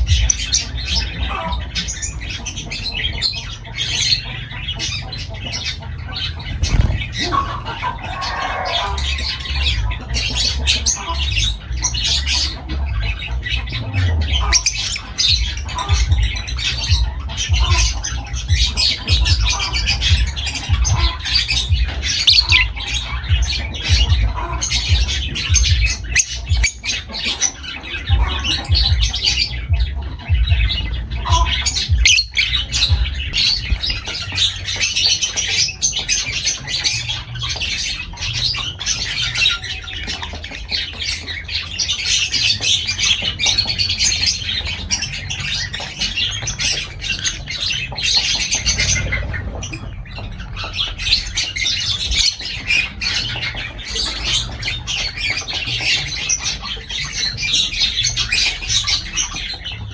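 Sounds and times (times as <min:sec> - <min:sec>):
lovebirds chattering and squawking: 0:00.0 - 0:59.9
low rumble: 0:06.4 - 0:26.6.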